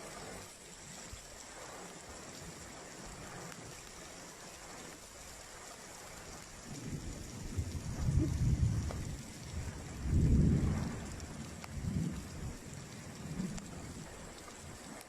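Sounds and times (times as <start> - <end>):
low rumble of thunder: 0.0 - 15.0
steady rain falling: 0.0 - 15.0.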